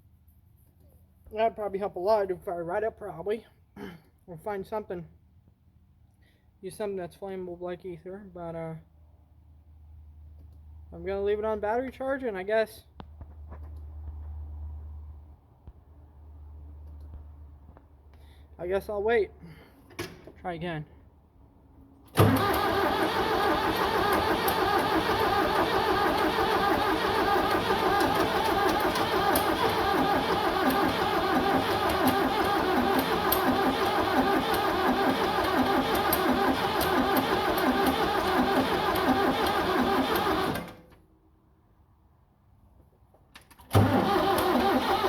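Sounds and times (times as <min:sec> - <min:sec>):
starter cranking diesel engine: 0:22.1 - 0:40.9, 0:43.7 - 0:45.0.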